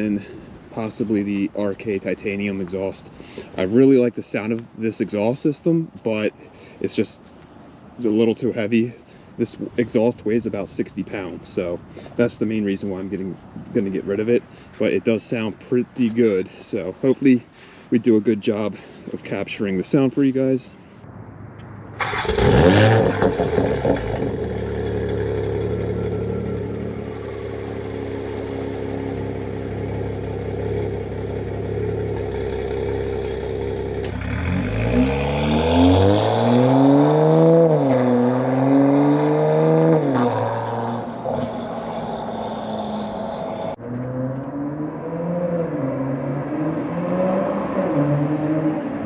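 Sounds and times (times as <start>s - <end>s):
car engine idling and revving: 21.5s - 49.0s.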